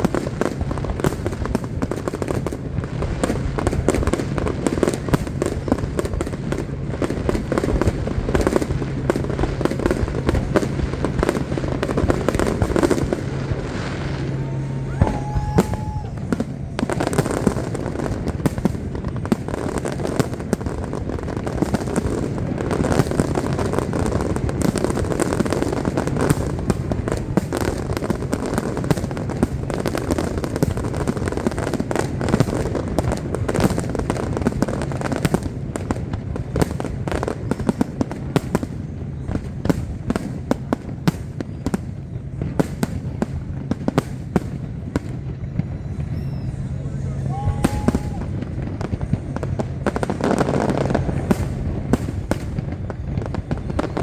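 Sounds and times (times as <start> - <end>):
fireworks cracks and bangs: 0.0 - 54.0
fireworks rumbling crackle: 0.0 - 54.0.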